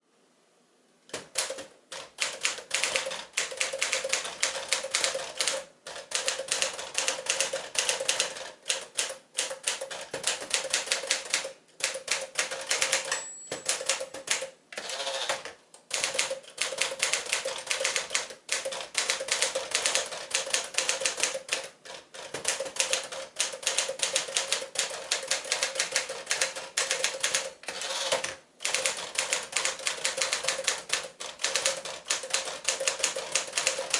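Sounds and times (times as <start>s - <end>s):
typewriter keystrokes clattering: 1.1s - 33.9s
typewriter bell ring: 12.6s - 14.2s.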